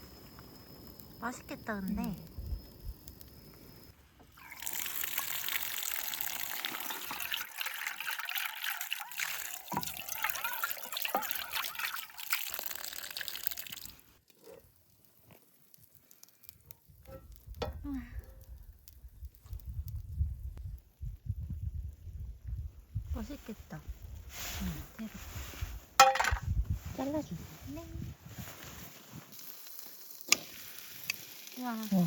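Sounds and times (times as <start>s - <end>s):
food sizzling in hot oil: 0.0s - 18.0s, 29.0s - 32.0s.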